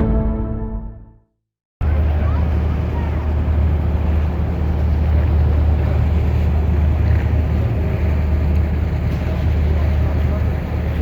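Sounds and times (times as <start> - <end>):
moving bus rumble: 1.8 - 11.0.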